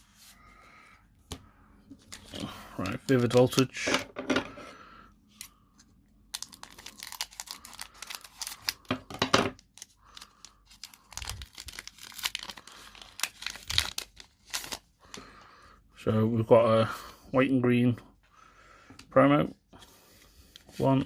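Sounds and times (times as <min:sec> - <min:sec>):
foil wrapper tearing and crinkling: 0:06.3 - 0:08.9, 0:09.6 - 0:14.9.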